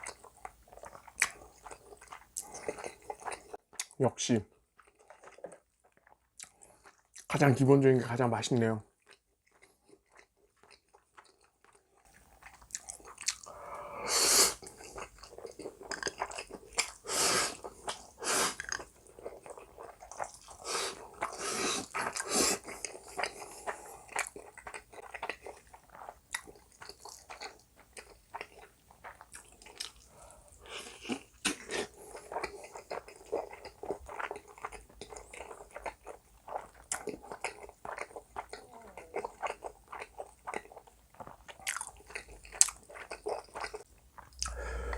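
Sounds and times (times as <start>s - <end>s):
person chewing noodles: 0.0s - 4.0s, 4.6s - 7.3s, 8.9s - 44.9s
wet mouth clicks: 44.2s - 44.9s.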